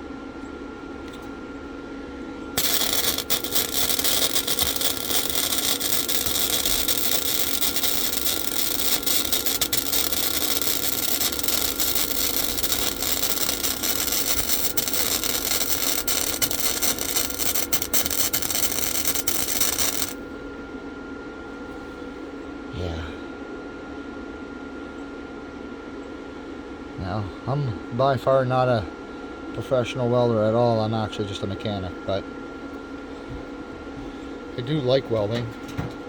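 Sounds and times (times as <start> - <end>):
welder arc crackling and sizzling: 2.6 - 20.2.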